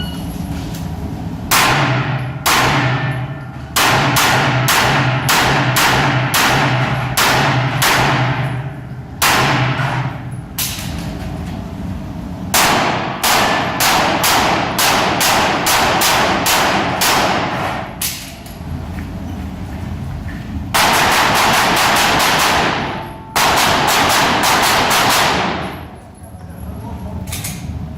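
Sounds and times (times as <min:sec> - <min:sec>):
pistol shots: 0:01.5 - 0:03.2, 0:03.8 - 0:08.5, 0:09.2 - 0:10.1, 0:12.5 - 0:18.2, 0:20.7 - 0:25.8.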